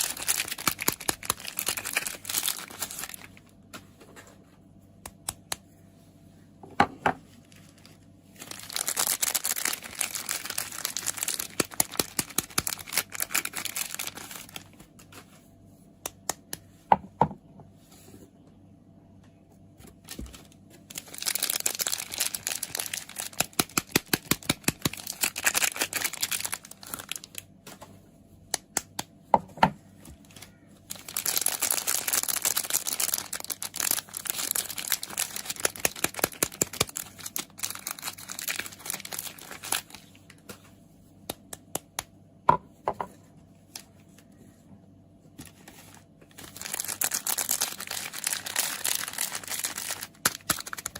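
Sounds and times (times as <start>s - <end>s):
packaging crinkling: 0.0s - 3.7s, 7.4s - 15.4s, 19.9s - 27.7s, 30.1s - 40.6s, 45.4s - 50.9s.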